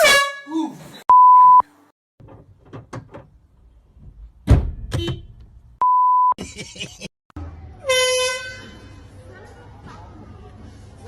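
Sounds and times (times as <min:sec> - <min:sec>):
knocks and clatters: 0:02.2 - 0:05.6.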